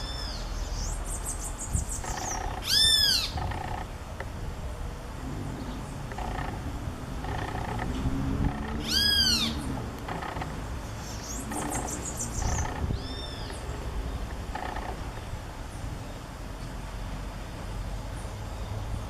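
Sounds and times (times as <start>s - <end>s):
bird calling shrilly: 1.8s - 3.4s, 8.8s - 9.7s.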